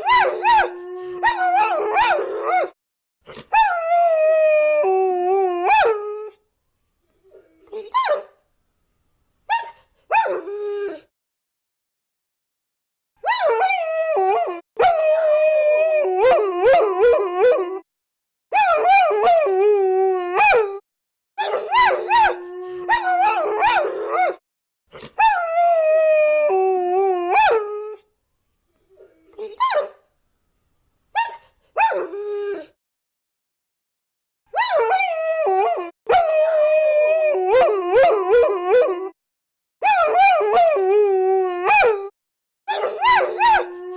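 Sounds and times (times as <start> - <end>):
dogs howling: 0.0 - 2.8, 21.4 - 24.4, 42.7 - 43.9.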